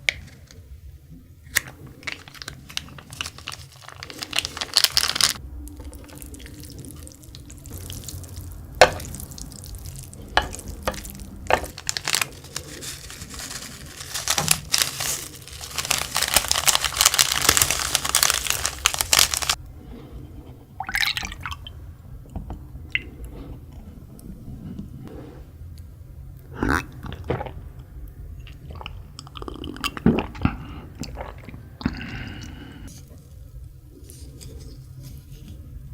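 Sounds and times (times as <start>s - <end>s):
liquid splashing: 2.9s - 19.6s.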